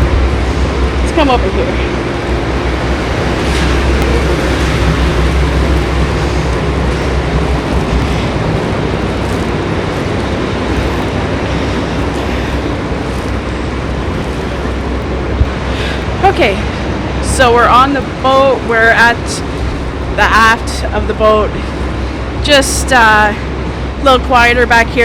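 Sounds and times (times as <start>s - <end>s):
boat engine drone: 0.0s - 25.0s
wind and water rushing: 1.9s - 17.6s.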